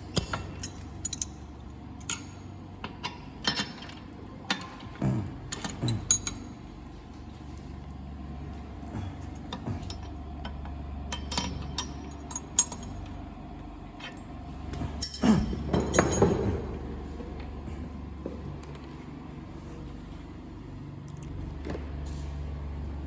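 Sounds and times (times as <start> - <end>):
workshop machinery hum: 0.0 - 23.0
metal parts clinking: 0.2 - 1.4, 11.1 - 13.0.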